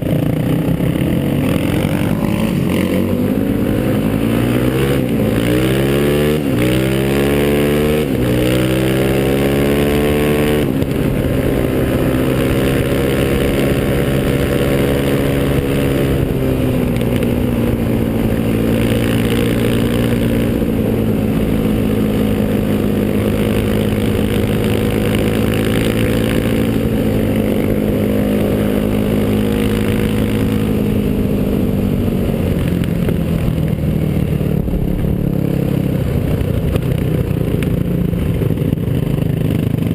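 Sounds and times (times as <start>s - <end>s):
atv engine accelerating: 0.0s - 39.9s.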